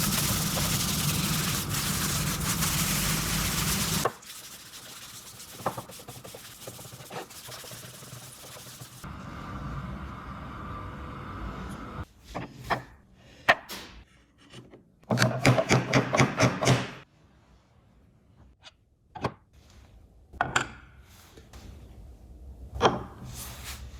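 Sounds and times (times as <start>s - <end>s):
wood rubbing strokes: 0.0s - 9.0s.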